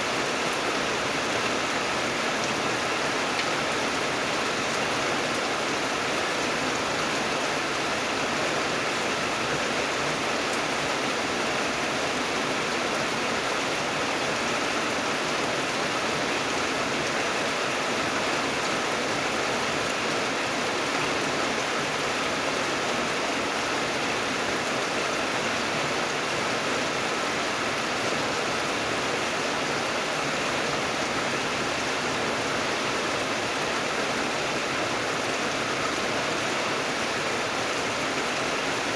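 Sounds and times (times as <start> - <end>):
steady rain hiss: 0.0 - 38.9.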